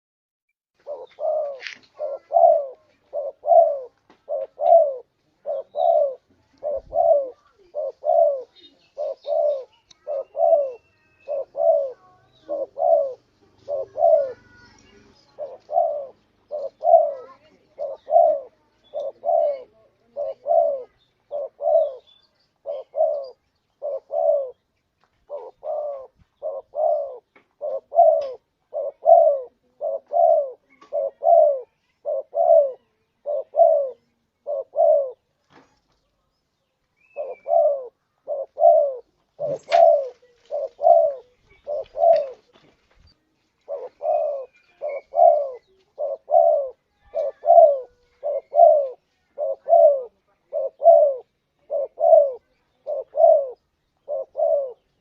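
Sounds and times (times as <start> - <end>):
dove cooing: 0.8 - 35.3, 37.0 - 42.7, 43.6 - 55.0
faint high chirp: 7.4 - 19.6, 30.6 - 42.4, 44.0 - 49.0.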